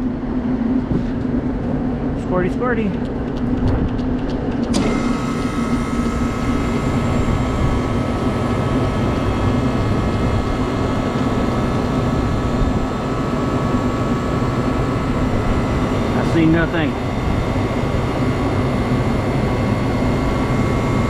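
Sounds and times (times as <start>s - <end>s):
condensing unit humming: 0.0s - 21.0s
faint whine: 0.0s - 21.0s
fan hiss: 4.8s - 21.0s.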